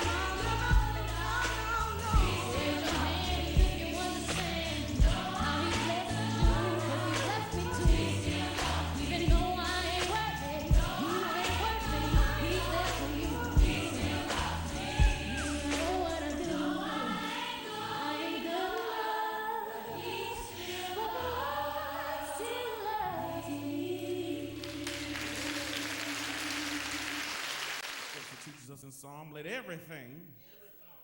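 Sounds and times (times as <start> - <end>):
gospel choir singing with instruments: 0.0 - 28.5
applause: 24.6 - 28.6.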